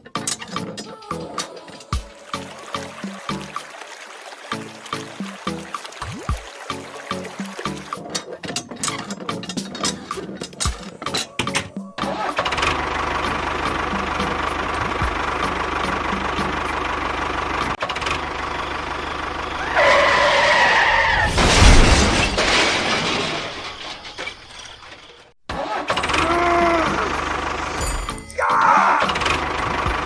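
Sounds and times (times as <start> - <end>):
small engine running: 12.1 - 19.8, 25.8 - 28.2.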